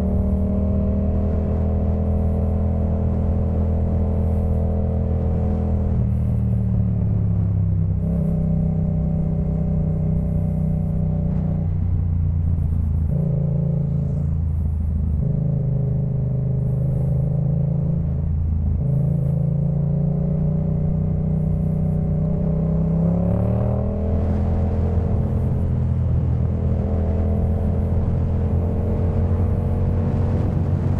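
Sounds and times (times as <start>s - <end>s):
motorcycle engine exhaust note: 0.0s - 30.9s.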